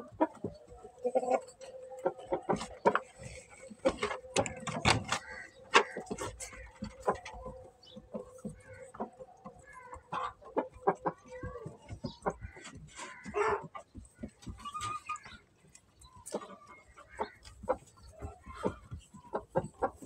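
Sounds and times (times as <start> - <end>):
chickens clucking: 0.0 - 20.0.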